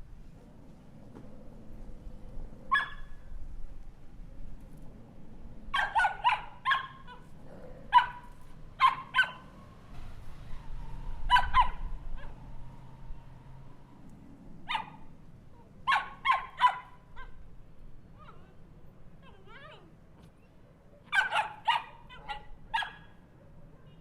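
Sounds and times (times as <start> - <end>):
small dog yapping: 2.7 - 3.2, 5.7 - 9.5, 11.3 - 12.5, 14.7 - 15.0, 15.6 - 17.4, 18.2 - 18.6, 21.1 - 23.2.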